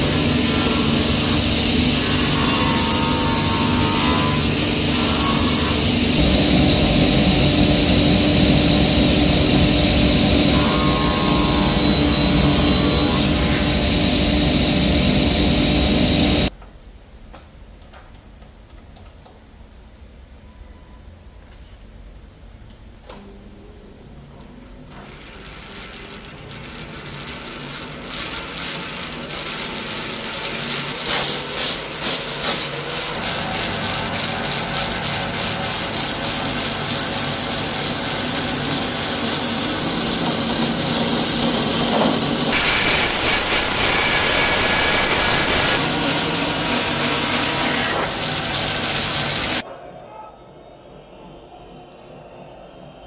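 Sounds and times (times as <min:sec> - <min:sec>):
woodworking power tool whining: 0:00.0 - 0:16.5, 0:25.0 - 0:49.6.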